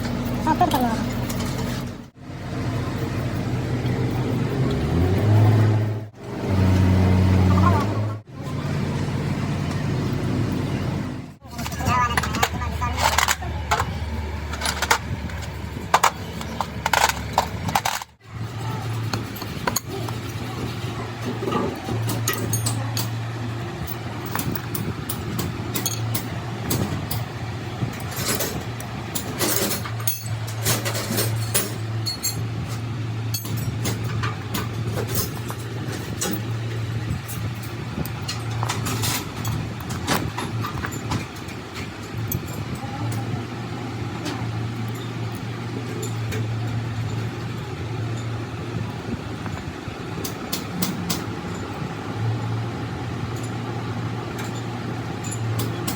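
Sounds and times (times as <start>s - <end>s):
low machine hum: 0.0s - 55.9s
metal clinks and knocks: 11.5s - 43.4s, 44.1s - 52.6s, 53.2s - 55.9s.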